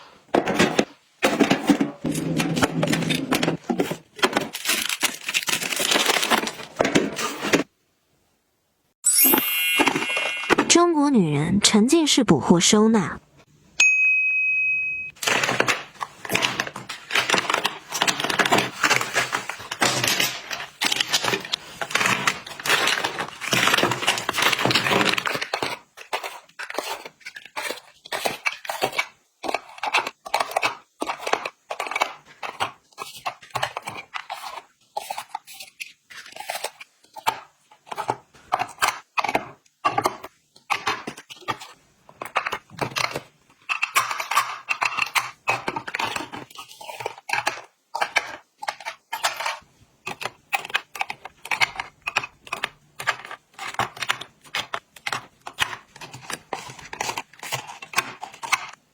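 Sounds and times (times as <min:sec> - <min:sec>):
plastic packaging crinkling: 0:02.8 - 0:07.6, 0:15.2 - 0:37.2.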